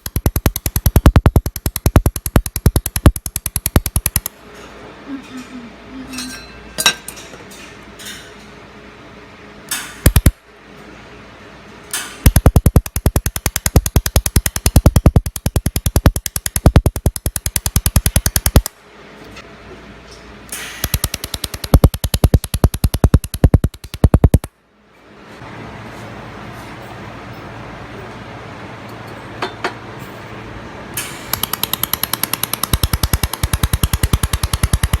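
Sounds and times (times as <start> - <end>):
laser welder pulsing pops: 0.0 - 4.3, 10.0 - 10.4, 12.2 - 18.8, 20.6 - 24.5, 31.0 - 35.0
sharp clicks: 0.0 - 4.3, 10.0 - 10.4, 12.2 - 18.7, 20.8 - 24.5, 31.0 - 35.0
steady machine hum: 0.0 - 6.8, 8.8 - 24.8, 30.6 - 35.0.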